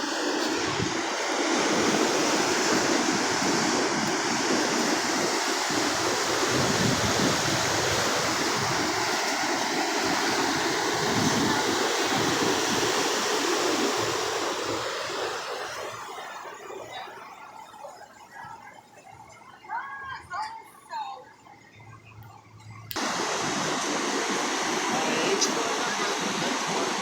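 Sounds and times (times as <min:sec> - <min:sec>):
ocean surf washing onto beach: 0:00.0 - 0:16.6, 0:23.0 - 0:27.0.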